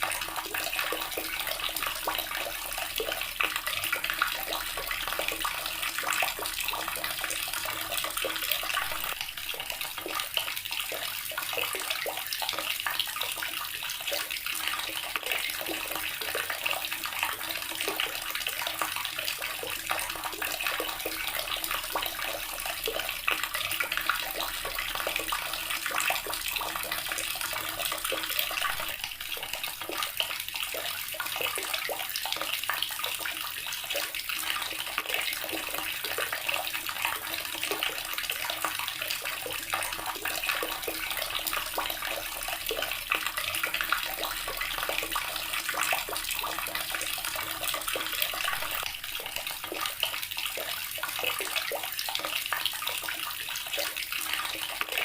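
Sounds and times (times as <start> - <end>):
water running from a tap: 0.0 - 55.0.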